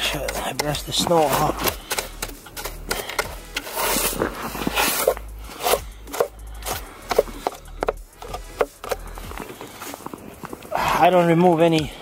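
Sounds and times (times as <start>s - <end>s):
brush sweeping snow: 1.0s - 1.7s, 3.4s - 7.1s.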